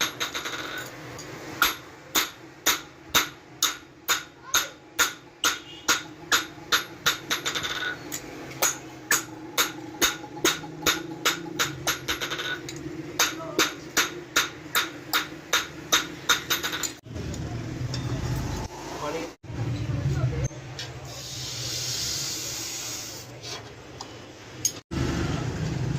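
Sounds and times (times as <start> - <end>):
hammer striking metal on anvil: 0.0 - 17.0.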